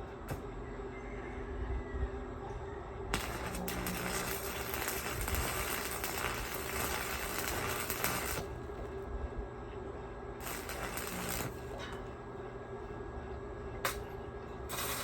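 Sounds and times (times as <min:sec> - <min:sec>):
steady hum: 0:00.0 - 0:15.0
arc welding crackling: 0:03.1 - 0:08.8, 0:10.4 - 0:12.0, 0:13.8 - 0:15.0.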